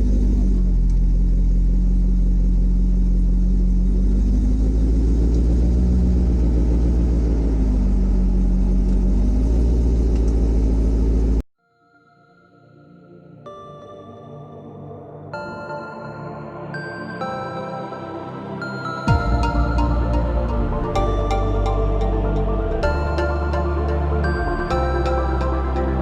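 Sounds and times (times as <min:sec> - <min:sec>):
car engine idling rumble: 0:00.0 - 0:11.4.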